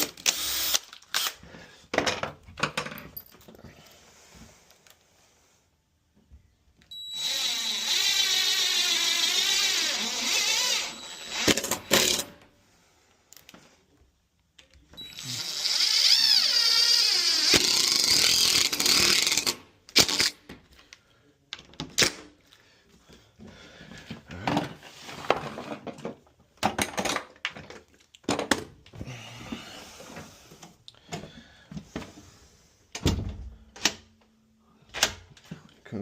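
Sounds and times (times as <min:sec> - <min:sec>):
cordless drill whining: 0:00.0 - 0:01.4, 0:06.9 - 0:12.2, 0:15.0 - 0:20.3.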